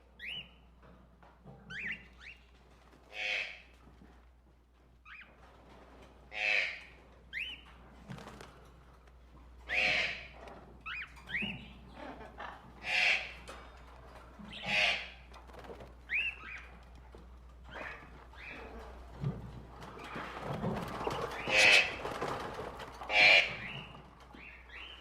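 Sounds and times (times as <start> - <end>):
birds squawking harshly: 3.1 - 3.7, 6.3 - 7.6, 9.7 - 11.8, 12.7 - 13.5, 14.5 - 15.3, 21.0 - 25.0.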